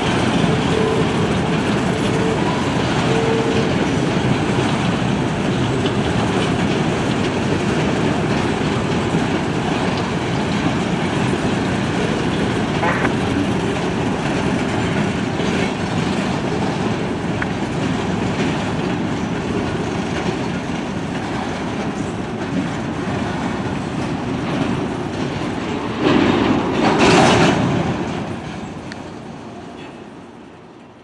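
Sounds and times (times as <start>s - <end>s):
train wheels clicking over rail joints: 0.0s - 31.0s.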